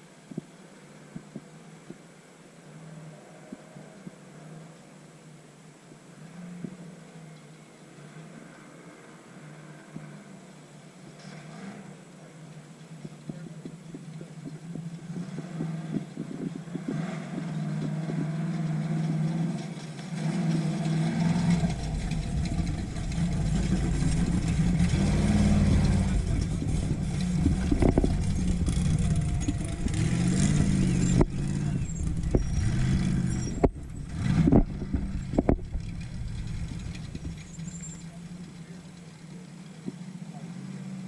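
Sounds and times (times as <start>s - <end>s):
off-road vehicle engine revving: 8.0s - 12.5s, 13.2s - 41.0s
deep rumble: 14.5s - 39.0s.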